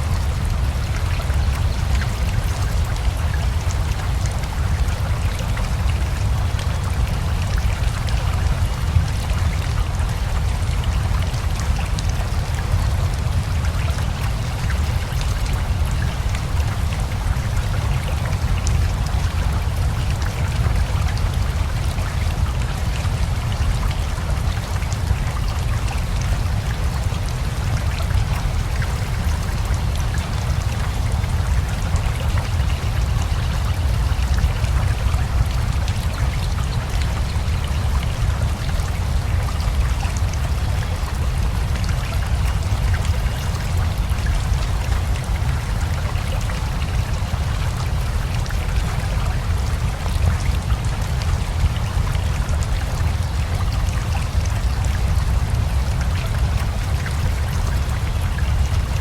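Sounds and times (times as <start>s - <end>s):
steady rain: 0.0s - 59.0s.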